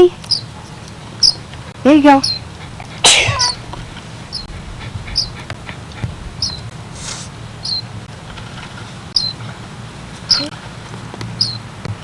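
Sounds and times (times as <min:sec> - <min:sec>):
baby bird cheeping: 0:00.3 - 0:00.5, 0:01.2 - 0:01.4, 0:02.0 - 0:02.5, 0:03.2 - 0:03.6, 0:04.3 - 0:07.9, 0:09.1 - 0:09.4, 0:10.3 - 0:10.5, 0:11.4 - 0:11.6.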